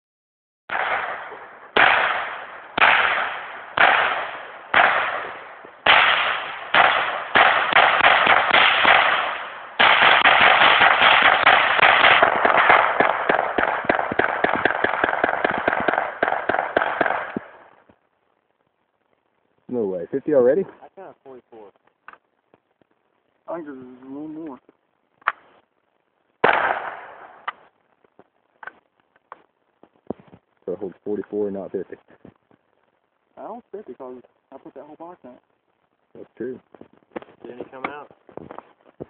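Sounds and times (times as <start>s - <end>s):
rifle shots: 0.7s - 17.7s, 26.4s - 27.7s.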